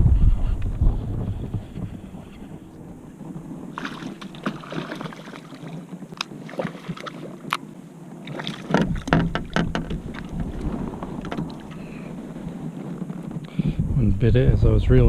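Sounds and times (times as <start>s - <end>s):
wind rumble on microphone: 0.0s - 15.0s
gear knocking and clicking: 8.7s - 11.8s.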